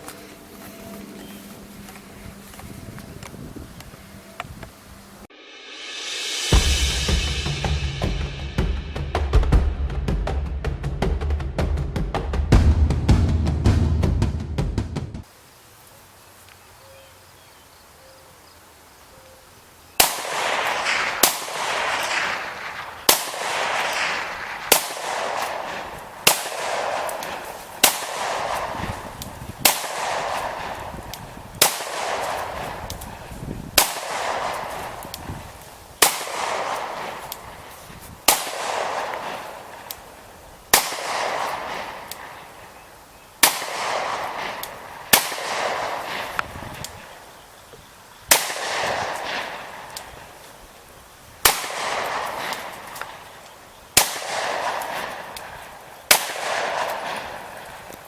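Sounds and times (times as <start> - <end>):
gunshots with echo: 20.0 - 35.4, 36.0 - 37.7, 38.3 - 39.9, 40.7 - 42.6, 43.4 - 47.2, 48.3 - 49.9, 51.4 - 53.2, 54.0 - 55.4, 56.1 - 57.7.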